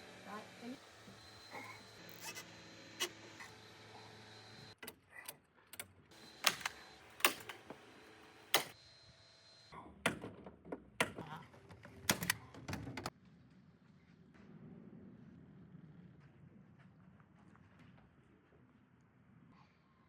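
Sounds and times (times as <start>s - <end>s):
sharp clicks: 5.8s - 7.6s.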